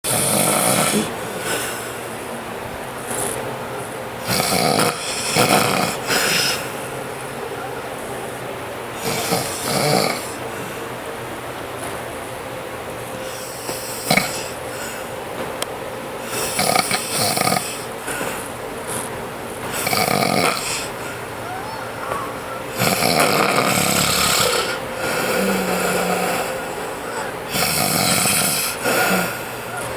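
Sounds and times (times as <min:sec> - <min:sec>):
person snoring: 0:00.1 - 0:01.9, 0:04.2 - 0:06.7, 0:09.0 - 0:10.4, 0:16.3 - 0:17.9, 0:19.8 - 0:21.1, 0:21.7 - 0:29.9.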